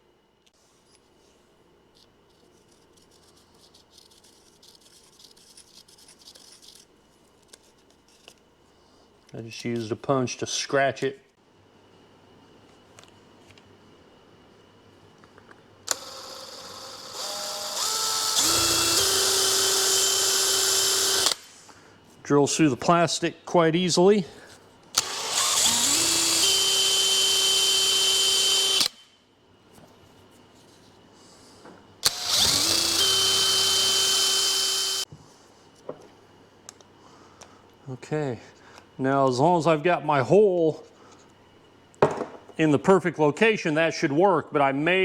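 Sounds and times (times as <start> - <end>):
electric drill boring through plastic: 15.9 - 21.5, 25.0 - 29.1, 32.0 - 35.1.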